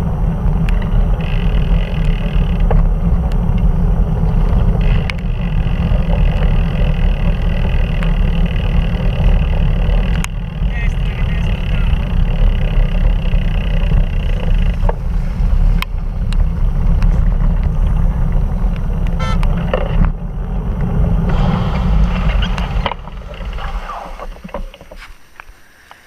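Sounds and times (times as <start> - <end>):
wind rumble: 0.0 - 25.6
bicycle clicks: 0.4 - 21.0.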